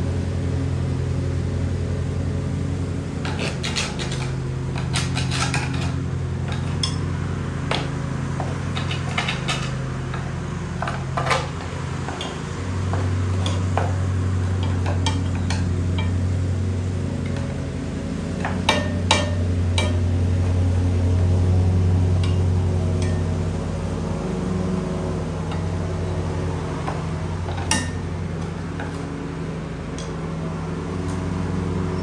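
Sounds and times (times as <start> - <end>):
steady mechanical hum: 0.0 - 32.0
hand tools clinking on steel: 3.2 - 7.1, 7.7 - 16.3, 18.4 - 20.6, 22.1 - 23.6.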